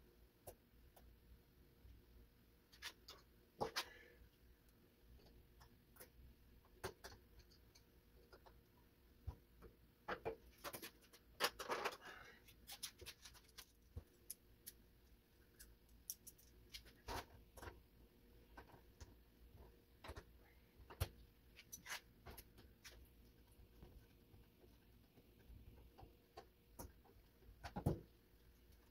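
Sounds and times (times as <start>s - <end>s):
small parts clicking and tapping: 4.6s - 17.8s
rustling and scraping: 10.2s - 14.8s, 15.6s - 17.8s, 21.0s - 26.0s.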